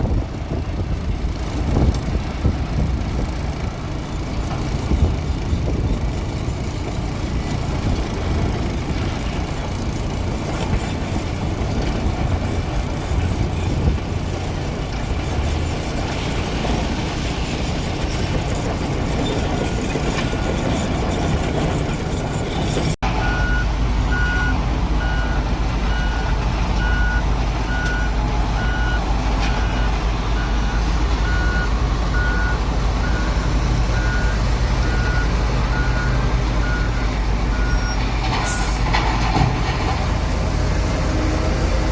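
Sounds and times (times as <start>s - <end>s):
diesel engine running: 0.0s - 41.9s
reversing alarm beeping: 21.8s - 38.0s.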